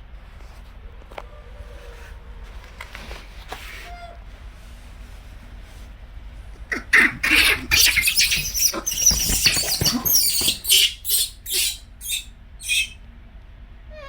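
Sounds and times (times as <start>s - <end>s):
young monkey squeaking and chirping: 6.9s - 13.0s.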